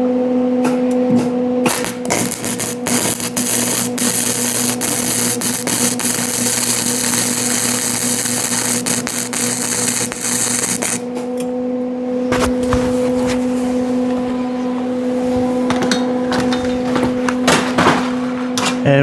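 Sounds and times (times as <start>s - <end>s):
welding arc crackling and hissing: 1.6s - 11.2s, 12.4s - 17.7s.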